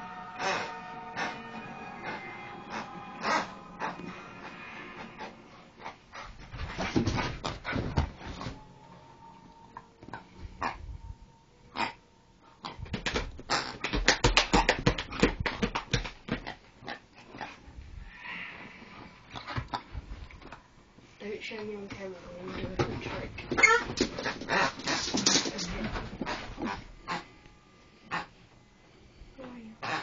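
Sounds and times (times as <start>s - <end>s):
dog paws thumping and scrabbling: 6.2s - 8.6s, 12.7s - 16.7s, 21.6s - 26.9s.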